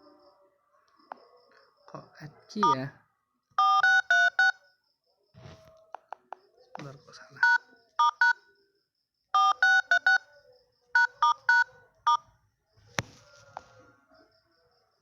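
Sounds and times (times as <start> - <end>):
touch-tone dial beeps: 3.6 - 4.6, 7.4 - 8.4, 9.4 - 10.2, 11.0 - 12.2.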